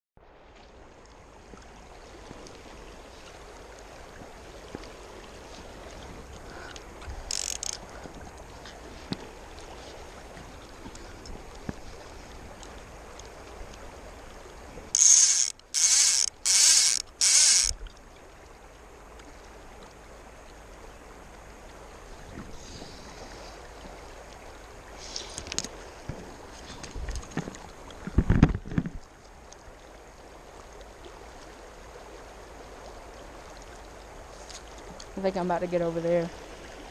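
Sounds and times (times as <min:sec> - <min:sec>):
fishing reel drag ratcheting: 0:07.2 - 0:07.9, 0:14.9 - 0:17.8.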